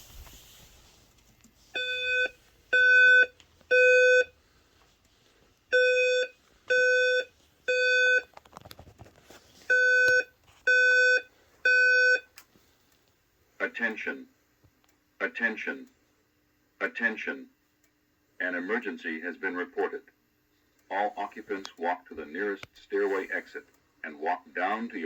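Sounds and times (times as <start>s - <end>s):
fire alarm tone blasts: 1.8s - 4.3s, 5.7s - 8.2s.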